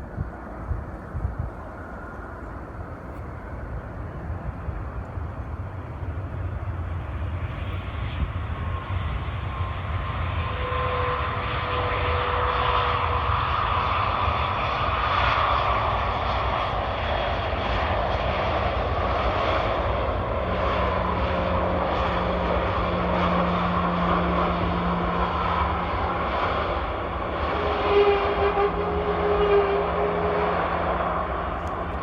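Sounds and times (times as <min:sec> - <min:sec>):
jet engines roaring: 0:00.0 - 0:32.0.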